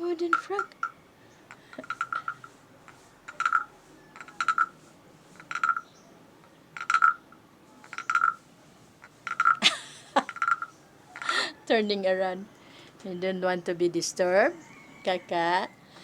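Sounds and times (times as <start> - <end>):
stick scraping wooden frog: 1.7 - 5.9, 6.8 - 9.6, 10.3 - 10.7.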